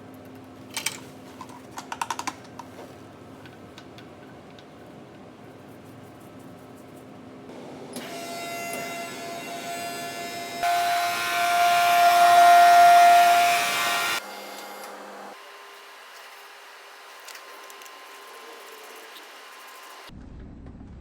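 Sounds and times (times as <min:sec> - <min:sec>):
vacuum pump motor whine: 0:07.5 - 0:15.5.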